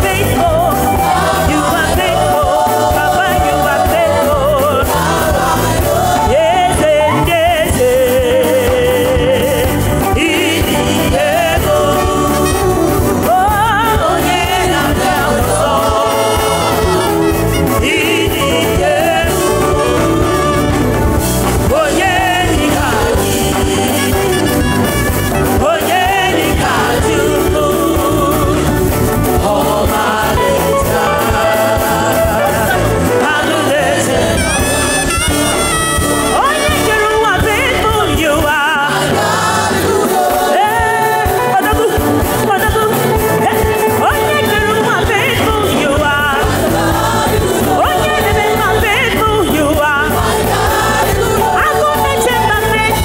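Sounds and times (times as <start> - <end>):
upbeat gospel music with singing: 0.0 - 53.0.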